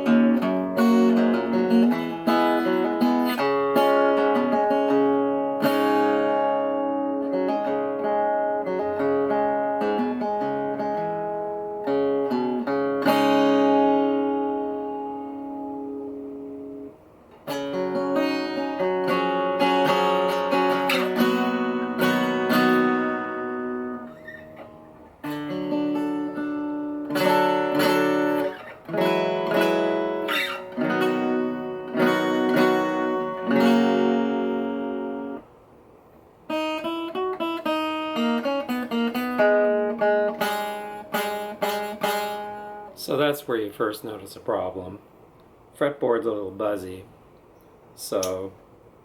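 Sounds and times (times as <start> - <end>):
acoustic guitar chords strummed: 0.0 - 44.9
guitar single notes picked: 47.5 - 48.6.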